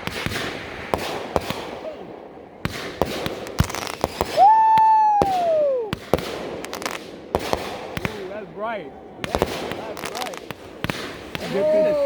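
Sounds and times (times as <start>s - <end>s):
whistling firework: 0.0s - 2.0s, 2.6s - 8.2s, 9.2s - 12.0s
fireworks popping and banging: 0.0s - 8.5s, 9.2s - 12.0s.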